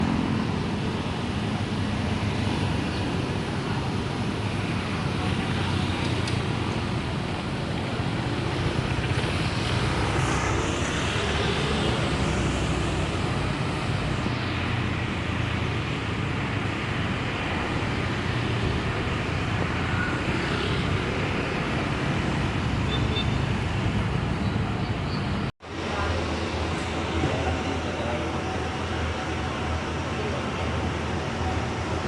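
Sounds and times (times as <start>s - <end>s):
traffic rumble: 0.0s - 32.0s.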